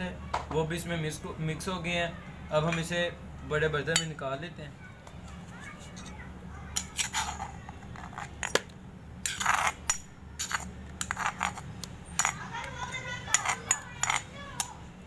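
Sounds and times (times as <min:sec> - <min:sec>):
spoon clinking against bowl: 0:12.2 - 0:12.4, 0:13.3 - 0:14.7.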